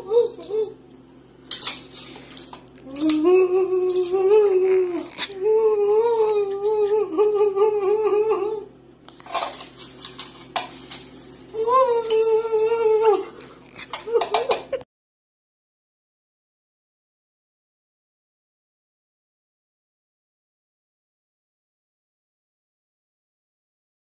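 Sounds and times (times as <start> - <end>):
voice holding wavering notes: 2.8 - 8.8, 11.5 - 13.4.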